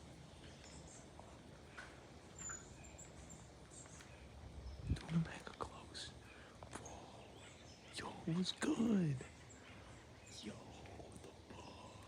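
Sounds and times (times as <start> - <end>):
faint outdoor ambience: 0.0 - 12.0.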